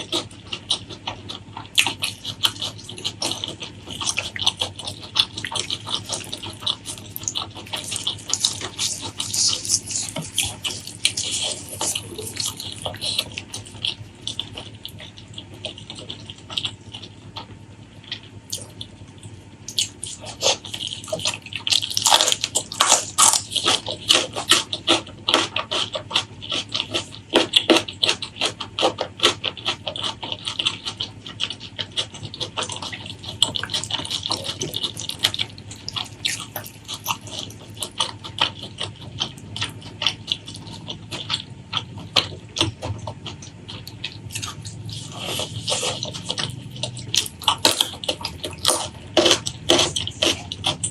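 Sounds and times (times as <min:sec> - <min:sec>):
wet sticky chewing: 0:00.0 - 0:50.9
lip smacks: 0:18.1 - 0:50.9.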